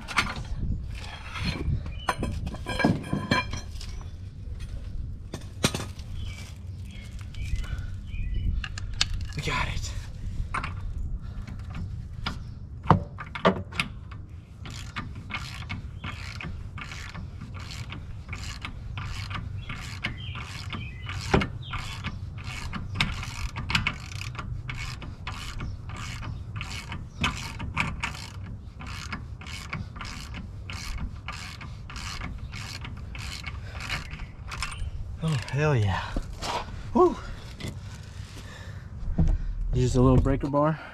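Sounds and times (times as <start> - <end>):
ratchet wrench clicking: 14.6 - 35.6.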